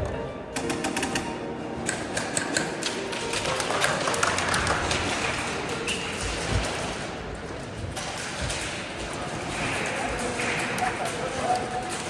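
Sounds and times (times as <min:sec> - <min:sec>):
music: 0:00.0 - 0:12.0
airsoft guns firing: 0:00.6 - 0:01.2.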